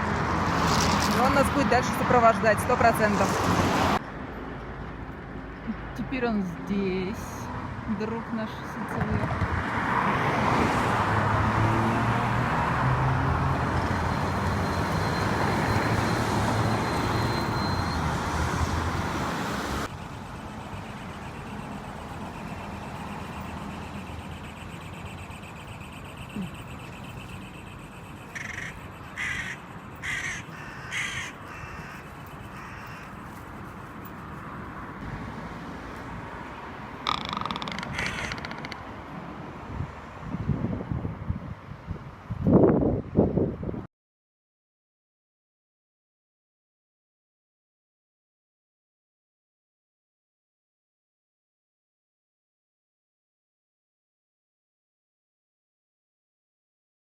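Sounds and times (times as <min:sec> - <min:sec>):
crow cawing: 0:28.0 - 0:33.4, 0:37.0 - 0:38.8.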